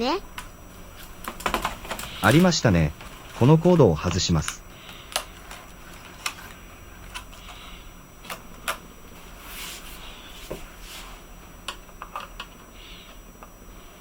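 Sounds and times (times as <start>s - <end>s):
soft rustles: 9.1s - 11.3s.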